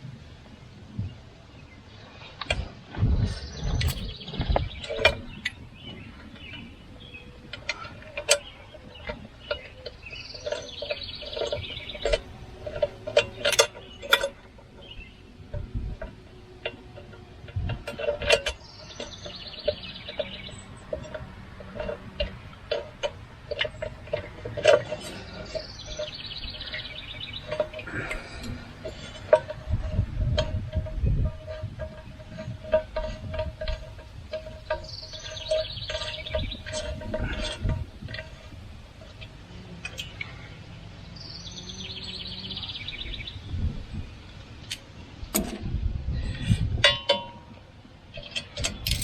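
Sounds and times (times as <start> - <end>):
songbird trilling: 3.4 - 15.3, 18.6 - 22.6, 25.2 - 28.8, 34.6 - 36.9, 41.0 - 43.5
metallic clicks and clinks: 48.2 - 49.0.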